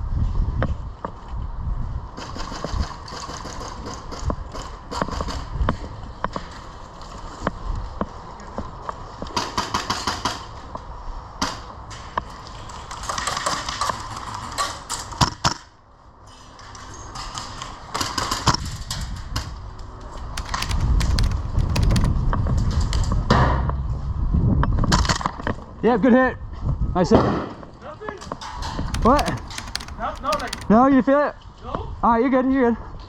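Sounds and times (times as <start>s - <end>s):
airsoft guns firing in bursts: 20.4s - 22.2s, 29.0s - 30.7s.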